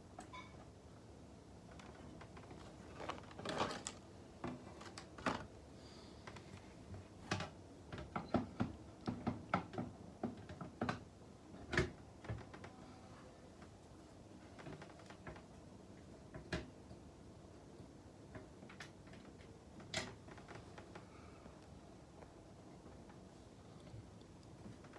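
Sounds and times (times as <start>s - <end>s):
clicks and knocks of hard parts: 7.2s - 12.8s.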